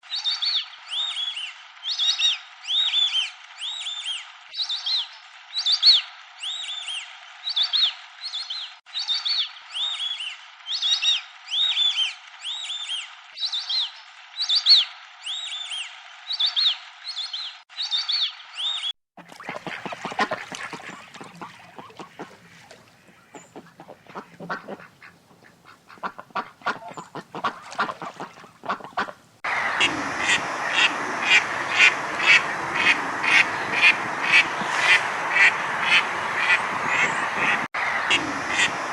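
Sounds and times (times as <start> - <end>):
ducks quacking: 19.3 - 38.9.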